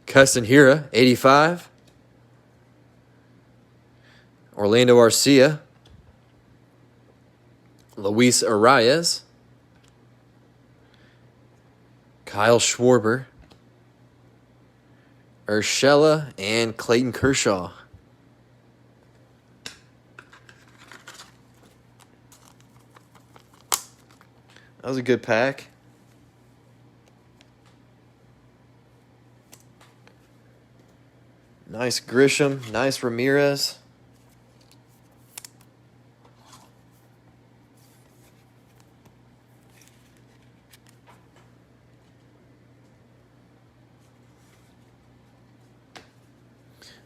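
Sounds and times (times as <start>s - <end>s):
faint electrical hum: 0.0s - 47.0s
trading cards swiping and rustling: 20.2s - 24.7s, 34.1s - 42.3s.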